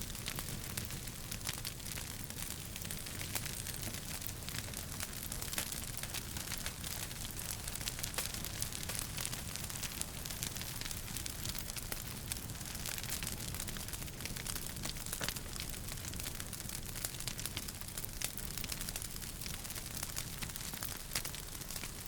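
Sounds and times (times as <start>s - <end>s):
wood fire crackling: 0.0s - 22.0s.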